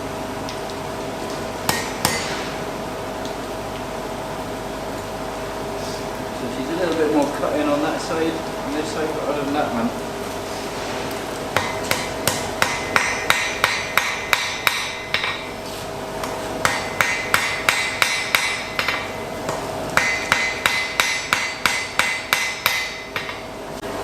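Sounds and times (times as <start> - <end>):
hammer ringing on anvil: 11.6 - 15.5, 16.6 - 19.1, 20.0 - 23.4.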